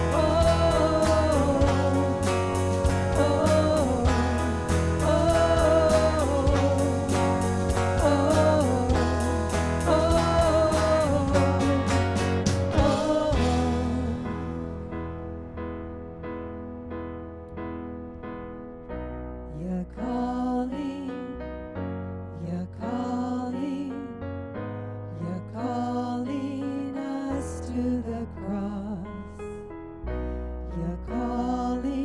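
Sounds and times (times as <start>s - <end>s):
steady drum beat: 0.0s - 14.8s
soft keyboard: 0.0s - 19.4s
guitar: 0.0s - 20.1s.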